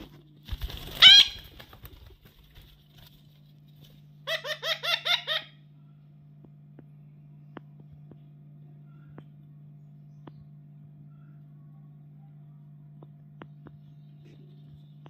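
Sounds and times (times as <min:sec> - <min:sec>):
steady low hum: 0:00.0 - 0:15.0
parrot calls: 0:00.9 - 0:01.6, 0:04.2 - 0:05.7.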